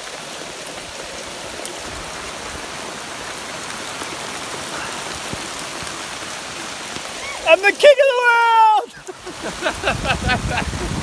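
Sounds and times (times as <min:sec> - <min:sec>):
heavy rain falling: 0:00.0 - 0:11.0
rainwater pouring off rock: 0:00.0 - 0:11.0.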